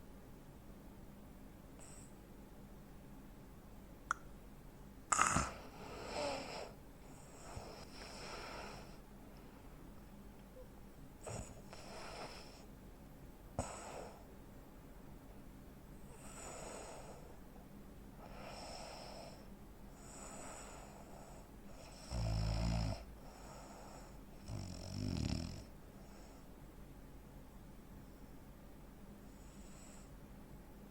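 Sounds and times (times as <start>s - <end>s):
loud rattling snores: 5.1s - 6.5s, 21.9s - 23.1s, 24.4s - 25.7s
man breathing noisily in sleep: 5.1s - 9.0s, 11.3s - 12.7s, 16.1s - 17.4s, 18.2s - 24.6s, 29.3s - 30.2s.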